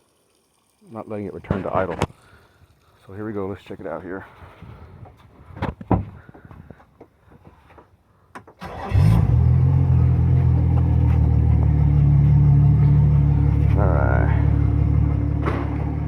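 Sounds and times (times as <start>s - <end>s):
outboard motor starting and idling: 8.6s - 16.0s.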